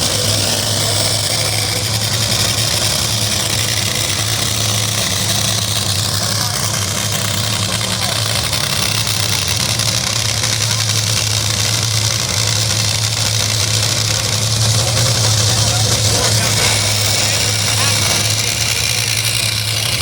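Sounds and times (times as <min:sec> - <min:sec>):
engine idling: 0:00.0 - 0:20.0.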